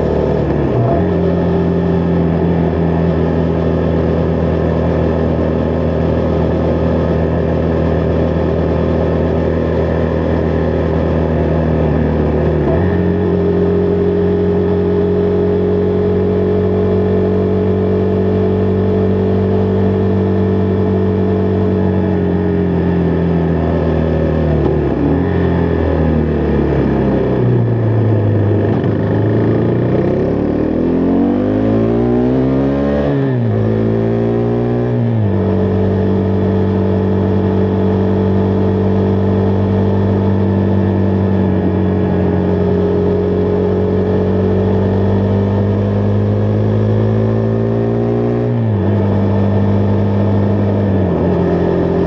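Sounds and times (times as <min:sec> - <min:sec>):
motorcycle engine with gear changes: 0:00.0 - 0:52.0.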